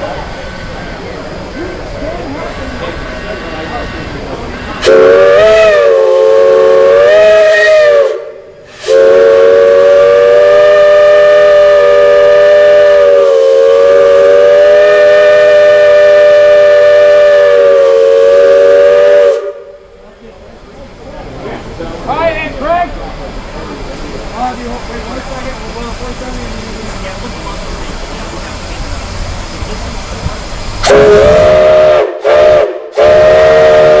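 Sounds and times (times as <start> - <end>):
steam whistle blowing: 4.8 - 19.8, 30.8 - 34.0.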